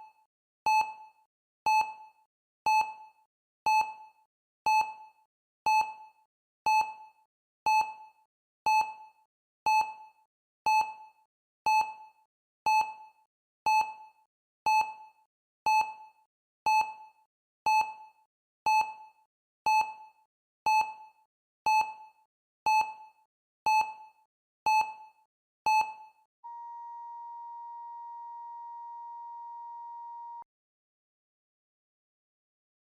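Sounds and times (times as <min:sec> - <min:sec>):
long alarm beep: 0:26.5 - 0:30.4.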